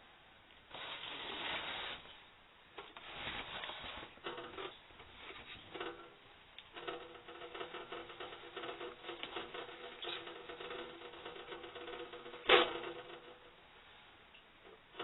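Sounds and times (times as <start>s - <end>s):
squeaky rubbing strokes: 0.7s - 2.2s
hands rustling and scratching: 2.8s - 6.0s.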